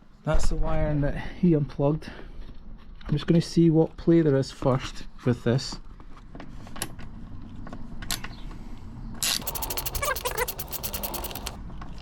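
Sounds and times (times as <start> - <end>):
socket ratchet clicking: 9.2 - 11.6.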